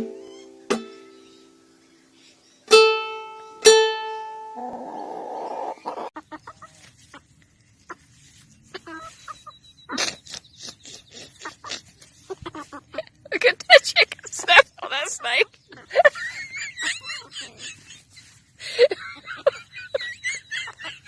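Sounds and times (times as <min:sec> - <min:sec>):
plucked ukulele notes: 0:00.0 - 0:01.2, 0:02.7 - 0:04.8
chicken call: 0:04.6 - 0:06.1.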